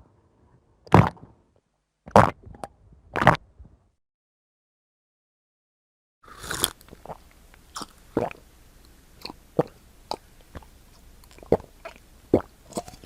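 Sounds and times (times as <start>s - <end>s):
person swallowing: 6.3s - 7.2s, 9.2s - 10.7s, 11.3s - 13.0s.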